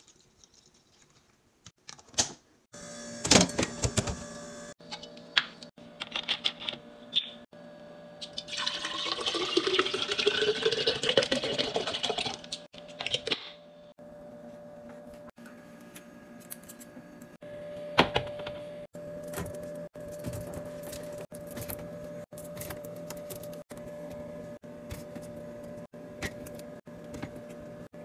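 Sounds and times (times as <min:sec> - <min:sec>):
liquid pouring into container: 0:08.2 - 0:13.3.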